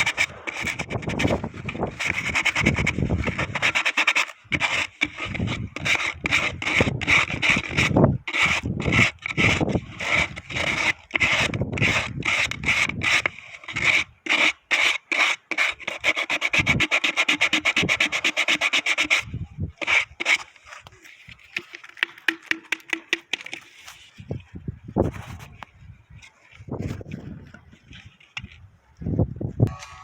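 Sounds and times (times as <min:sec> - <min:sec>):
sandpaper rubbing on wood: 0:00.0 - 0:20.7.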